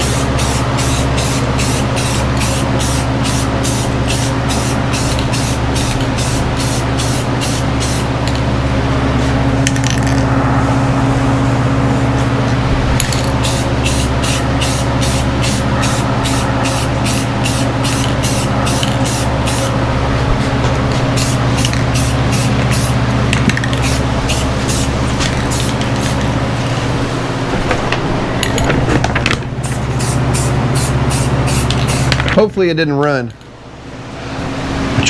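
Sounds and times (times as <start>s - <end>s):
spray can hissing in bursts: 0.0s - 8.2s, 13.4s - 19.8s, 21.2s - 23.0s, 23.8s - 26.2s, 29.6s - 32.2s
steady low hum: 0.0s - 35.0s.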